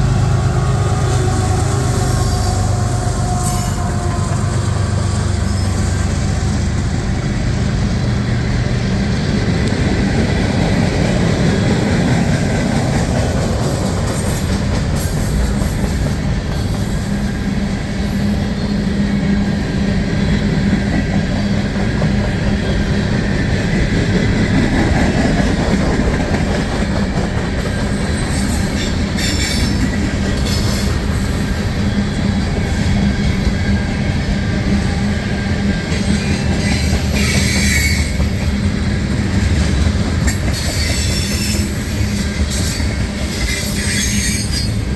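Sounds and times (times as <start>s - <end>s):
steel wheels rumbling on rail: 0.0s - 44.9s
wheel squeal: 27.6s - 35.1s, 35.7s - 38.4s, 39.4s - 44.9s.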